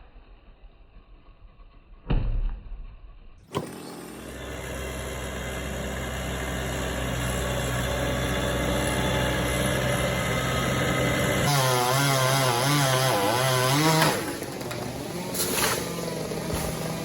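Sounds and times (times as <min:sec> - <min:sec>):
small engine wavering pitch: 0:03.5 - 0:11.5
engine humming steadily: 0:03.5 - 0:17.0.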